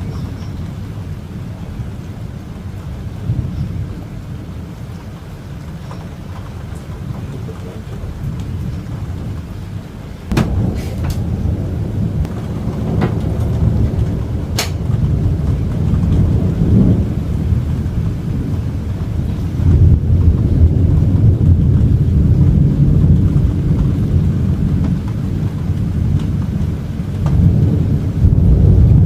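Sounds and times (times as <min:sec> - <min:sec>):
thunder crackles: 0:00.0 - 0:29.0
thunder rumbling: 0:00.0 - 0:29.0
sharp thunder crack: 0:10.3 - 0:18.6, 0:27.2 - 0:29.0.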